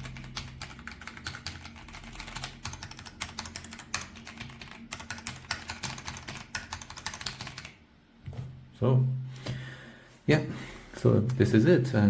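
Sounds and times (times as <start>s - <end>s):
mechanical keyboard typing: 0.0s - 7.8s.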